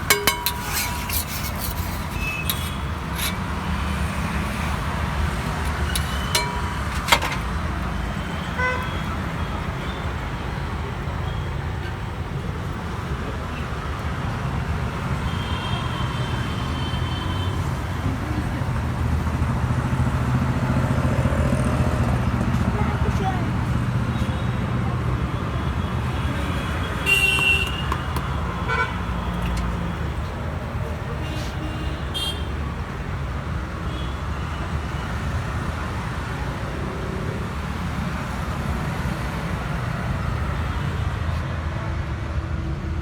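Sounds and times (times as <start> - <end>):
sharp metallic clinks: 0.0 - 3.6, 5.7 - 7.5
street traffic: 0.0 - 43.0.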